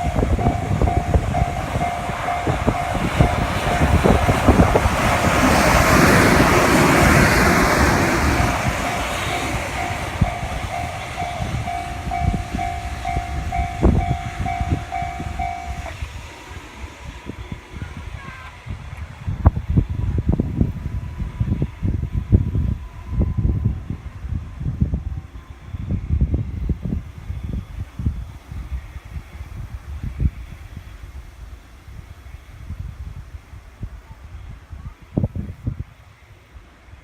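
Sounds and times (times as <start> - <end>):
level crossing bell ringing: 0.0 - 4.3, 8.3 - 15.9
train wheels clacking: 0.0 - 16.2.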